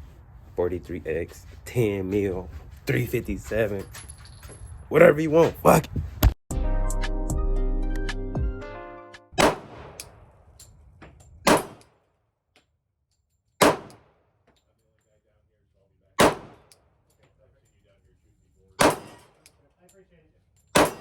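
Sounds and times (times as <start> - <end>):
handgun shots: 9.4 - 10.2, 11.5 - 11.9, 13.6 - 14.1, 16.2 - 16.8, 18.8 - 19.5, 20.8 - 21.0.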